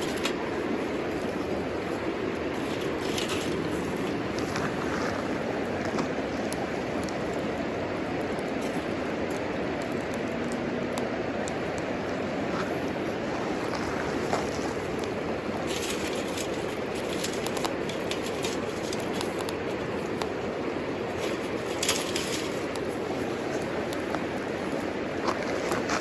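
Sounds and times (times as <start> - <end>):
steady rushing noise: 0.0 - 26.0
wood fire crackling and popping: 0.0 - 26.0.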